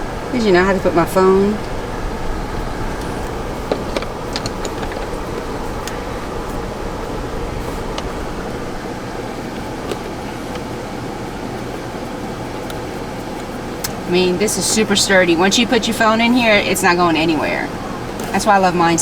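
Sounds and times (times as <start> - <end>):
fan blower noise: 0.0 - 19.0
small parts clicking: 3.1 - 6.8.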